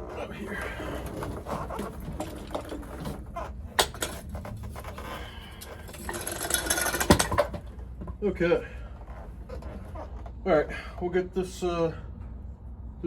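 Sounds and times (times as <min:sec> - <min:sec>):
tools and metal parts clicking: 0:05.6 - 0:07.5.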